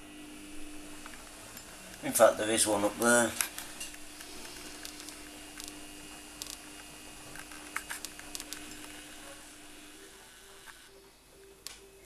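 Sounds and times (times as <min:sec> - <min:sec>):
steady low hum: 0:00.0 - 0:12.0
camera handling clicks and creaks: 0:04.8 - 0:05.8, 0:07.4 - 0:09.0.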